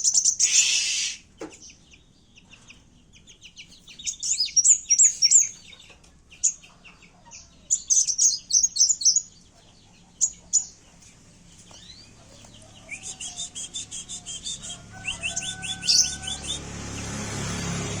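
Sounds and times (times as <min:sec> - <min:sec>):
songbird chirping and trilling: 0:00.0 - 0:18.0
lower whistled bird note: 0:00.4 - 0:01.2.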